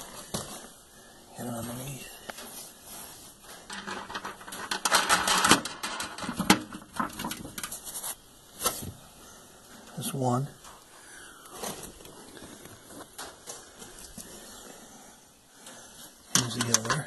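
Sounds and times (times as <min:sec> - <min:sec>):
hand tool clicking and rattling: 0:03.7 - 0:07.7.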